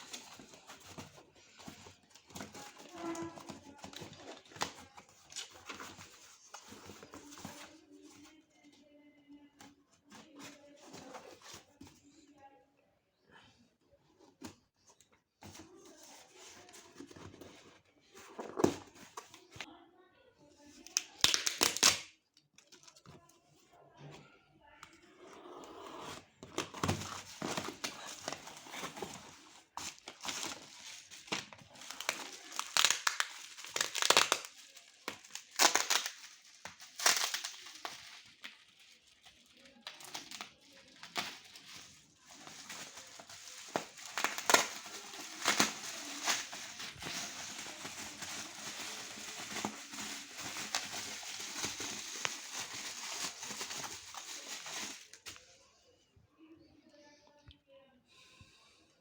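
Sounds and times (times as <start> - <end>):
packaging crinkling and rustling: 0.0 - 8.8, 20.8 - 23.2, 26.4 - 55.4.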